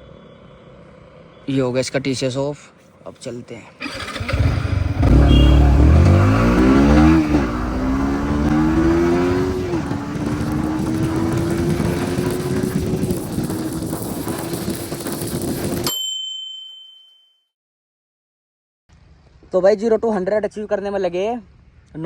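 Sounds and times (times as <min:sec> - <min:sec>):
motorcycle engine accelerating: 0:03.8 - 0:15.9.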